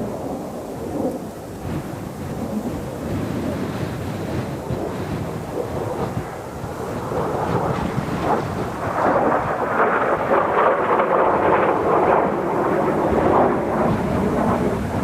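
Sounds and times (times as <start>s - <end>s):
jet aircraft roaring past: 0.0s - 15.0s
wind buffeting microphone: 0.0s - 15.0s.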